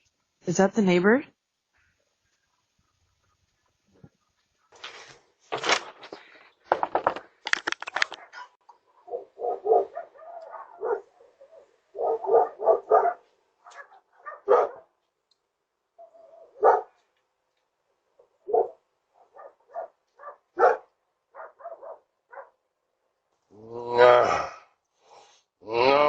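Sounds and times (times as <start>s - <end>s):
dog barking: 8.1s - 15.0s, 16.0s - 17.0s, 18.4s - 22.6s.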